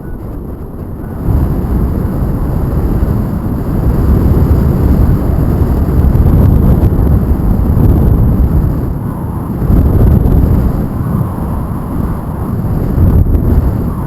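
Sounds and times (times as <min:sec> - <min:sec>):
wind rushing over microphone: 0:00.0 - 0:14.0.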